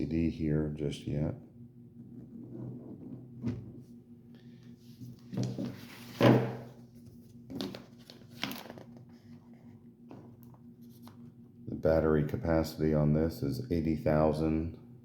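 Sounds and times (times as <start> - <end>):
low steady hum: 0.0 - 15.0
handling knocks and rustles: 4.9 - 9.1.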